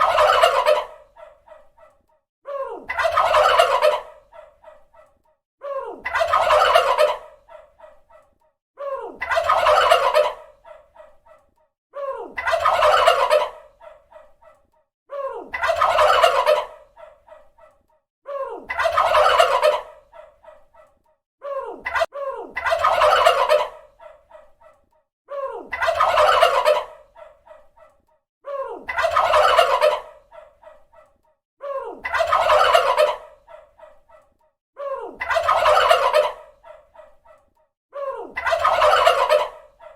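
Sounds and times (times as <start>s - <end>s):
turkey gobbling: 0.0s - 1.6s, 2.9s - 5.1s, 6.0s - 8.0s, 9.2s - 11.4s, 12.4s - 14.3s, 15.5s - 17.7s, 18.7s - 20.6s, 21.8s - 24.8s, 25.7s - 27.8s, 28.9s - 31.1s, 32.0s - 34.2s, 35.2s - 37.4s, 38.4s - 39.9s.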